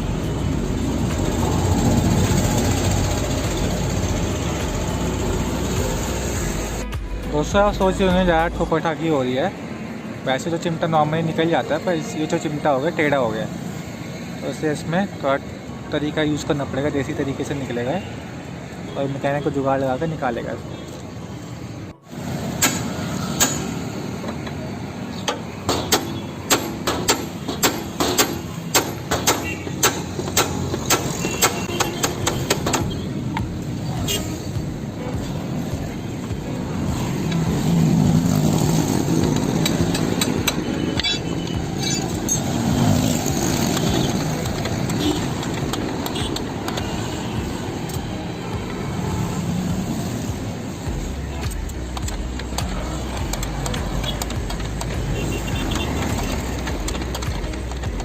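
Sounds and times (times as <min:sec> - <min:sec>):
hammer striking metal: 0:22.6 - 0:23.9, 0:25.3 - 0:33.0.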